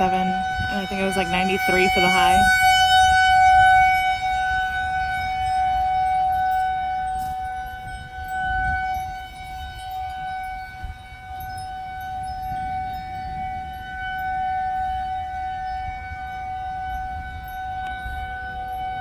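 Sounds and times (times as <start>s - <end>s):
tornado warning siren: 0.0s - 19.0s.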